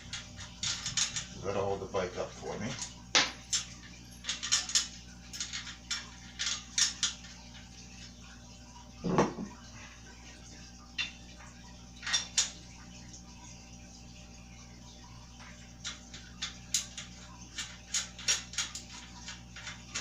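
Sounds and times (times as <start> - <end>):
metal hardware clinking: 2.2 - 7.7.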